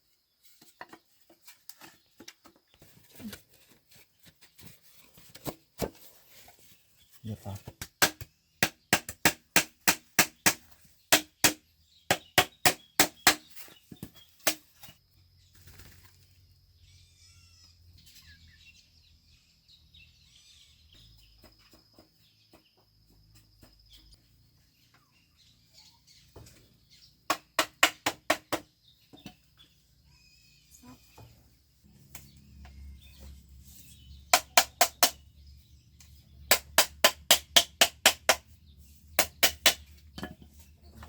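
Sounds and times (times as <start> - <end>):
faint birds chirping: 0.0 - 9.2, 10.0 - 37.1, 38.3 - 41.0
tool striking bamboo: 7.6 - 14.9, 27.3 - 29.4, 34.3 - 35.2, 36.5 - 38.6, 39.2 - 40.4.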